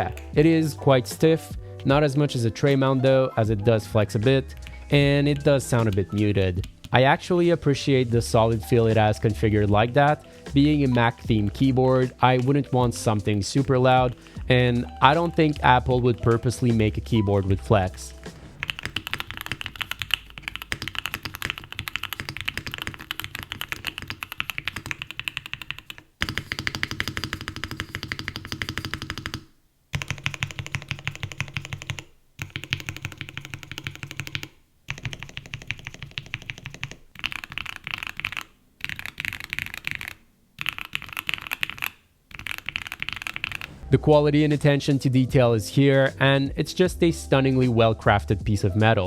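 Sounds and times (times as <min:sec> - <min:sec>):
mechanical keyboard typing: 0:18.6 - 0:43.8.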